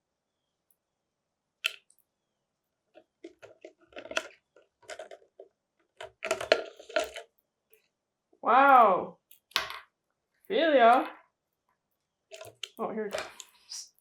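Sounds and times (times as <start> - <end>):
parrot beak clicking and crunching: 12.3 - 13.7.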